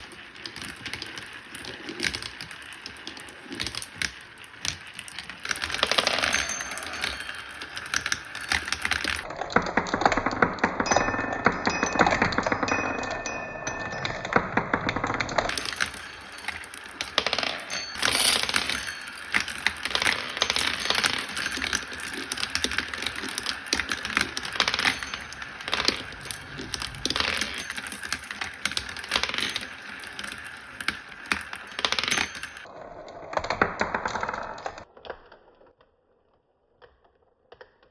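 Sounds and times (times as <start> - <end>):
marbles clattering down a track: 0.0 - 32.7
short ringing tones: 5.7 - 9.2, 15.5 - 32.7.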